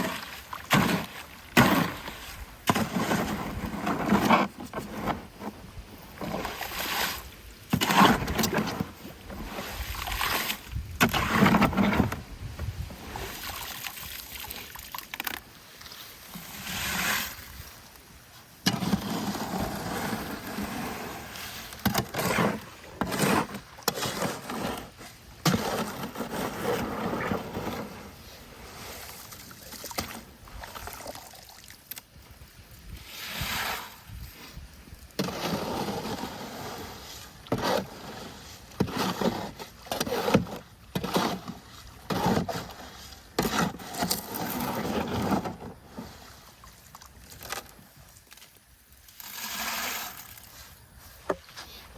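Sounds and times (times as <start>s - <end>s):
wet concrete sloshing: 0.0s - 5.2s, 13.0s - 17.7s
shovel scraping in wheelbarrow: 0.0s - 17.9s, 18.6s - 30.4s, 32.9s - 51.9s.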